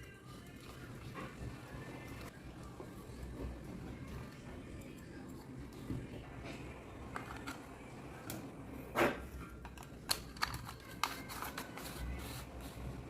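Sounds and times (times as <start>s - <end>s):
objects clicking and knocking: 9.0s - 12.0s.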